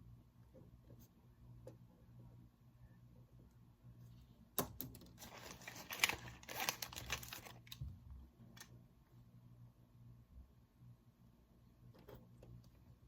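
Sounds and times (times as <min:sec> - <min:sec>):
faint low hum: 0:00.0 - 0:13.0
crinkling rustling: 0:05.2 - 0:07.8.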